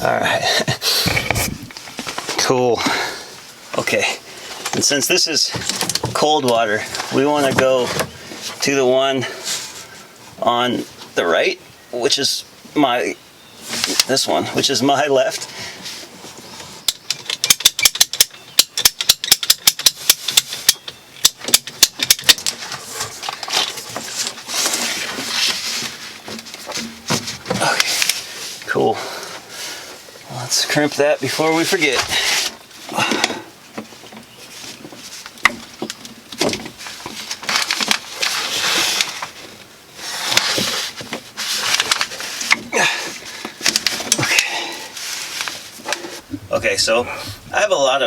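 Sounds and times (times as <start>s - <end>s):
hand tool clicking: 17.0s - 22.4s.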